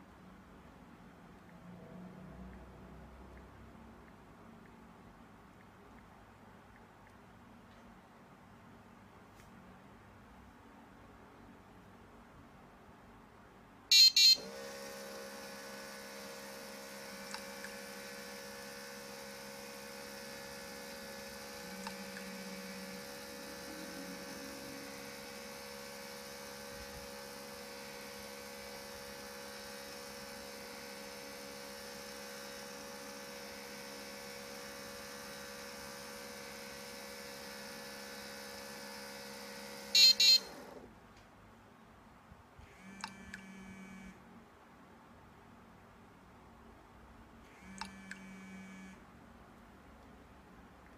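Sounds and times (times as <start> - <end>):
buzzer beeps: 13.9 - 14.4, 40.0 - 40.5
small electric motor humming: 14.4 - 40.8.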